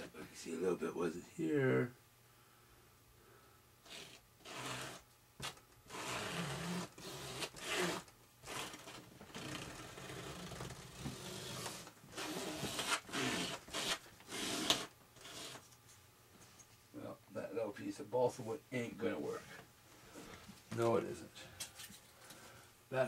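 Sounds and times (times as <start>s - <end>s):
wood scraping over tape: 3.8s - 15.7s.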